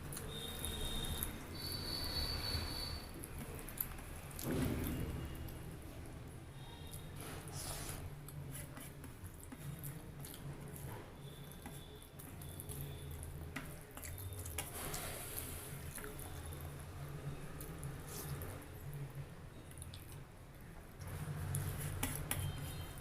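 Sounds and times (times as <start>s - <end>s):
wet chewing and mouth clicks: 0.0s - 1.7s, 3.1s - 5.6s, 8.2s - 16.8s, 17.6s - 20.4s.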